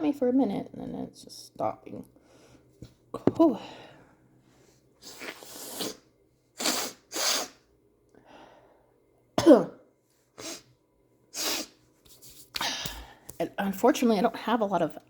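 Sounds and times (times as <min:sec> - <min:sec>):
woman sniffing sharply: 0:05.0 - 0:06.0, 0:06.6 - 0:07.6, 0:10.4 - 0:10.7, 0:11.3 - 0:11.8.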